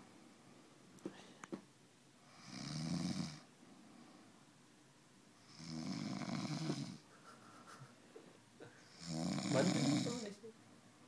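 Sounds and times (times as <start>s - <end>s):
quiet breathing: 0.0s - 1.6s, 2.2s - 4.6s
man snoring: 2.3s - 3.5s, 5.4s - 7.0s, 8.9s - 10.3s.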